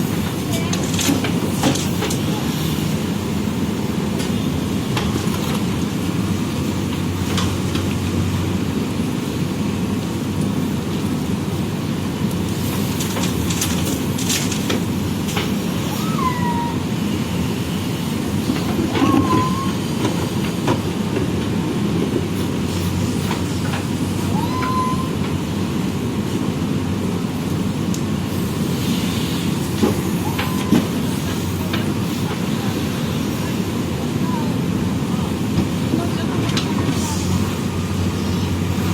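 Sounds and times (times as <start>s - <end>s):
diesel engine running: 0.0s - 38.9s
short squeaks: 19.0s - 19.9s.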